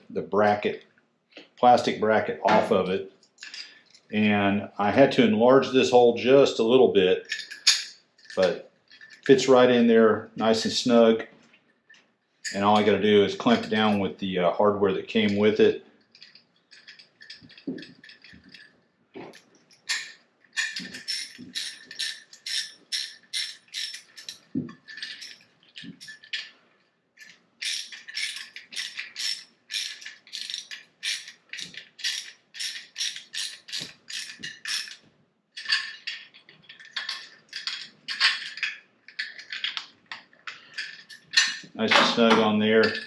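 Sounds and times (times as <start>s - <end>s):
hand ratchet clicking: 19.9s - 25.4s, 27.2s - 35.0s.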